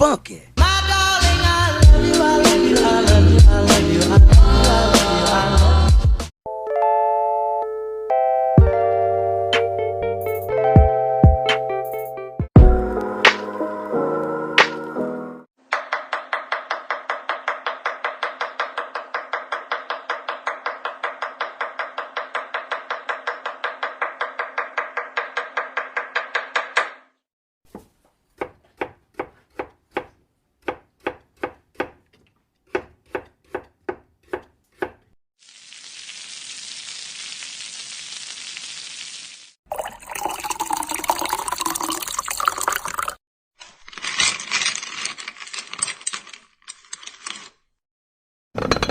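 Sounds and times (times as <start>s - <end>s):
knife chopping: 27.7s - 35.2s.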